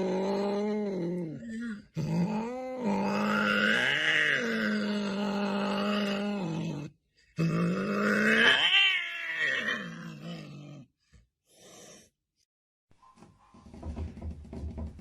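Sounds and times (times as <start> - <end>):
cat yowling: 8.2 - 10.2.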